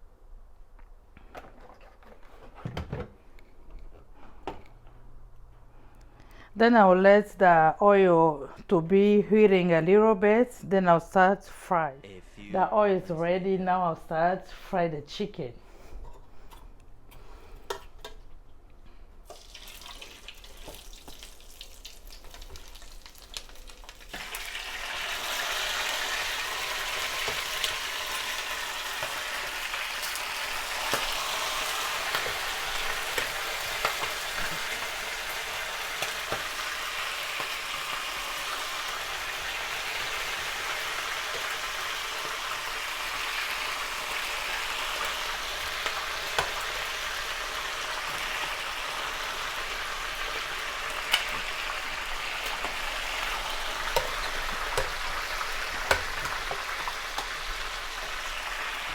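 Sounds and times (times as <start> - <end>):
oil pops and crackles: 19.3 - 24.4, 50.4 - 58.2
chicken sizzling in hot oil: 19.3 - 58.9.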